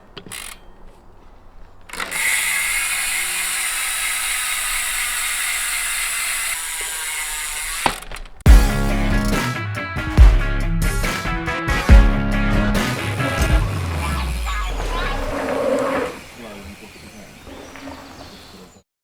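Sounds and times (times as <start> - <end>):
bike freehub buzzing: 0.0 - 9.4, 12.8 - 17.1
rock music: 8.5 - 15.3.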